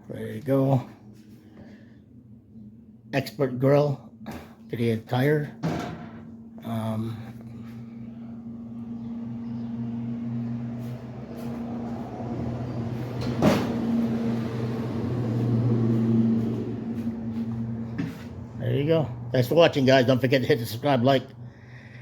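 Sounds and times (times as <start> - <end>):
low mechanical hum: 0.0 - 22.0.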